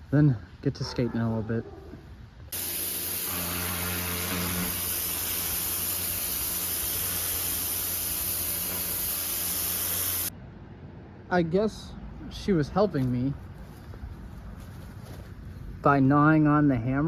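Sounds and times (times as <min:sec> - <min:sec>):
high-pressure spray hissing: 0:02.5 - 0:10.3
motor humming: 0:02.6 - 0:10.3.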